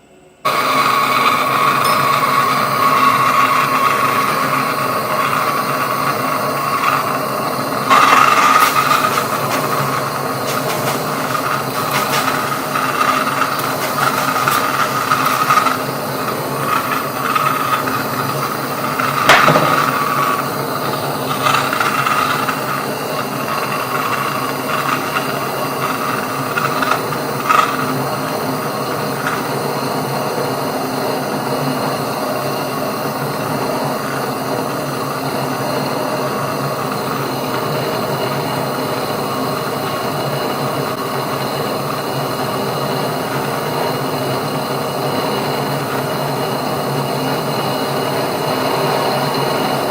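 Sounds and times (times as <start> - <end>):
small power tool running: 0.5 - 30.4
sharp knocks: 19.3 - 20.3.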